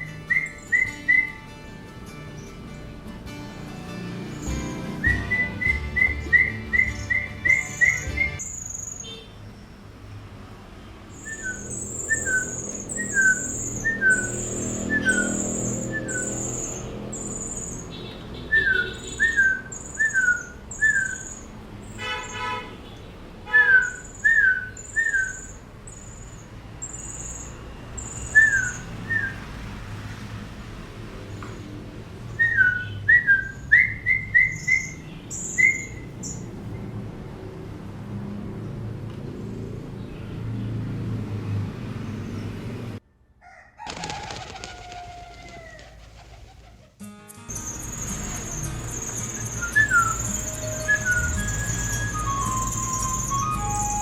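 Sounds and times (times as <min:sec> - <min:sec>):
bird calling with falling whistles: 0:00.0 - 0:01.4, 0:04.4 - 0:09.3, 0:11.1 - 0:22.5, 0:23.5 - 0:29.4, 0:32.3 - 0:36.5, 0:47.6 - 0:54.0.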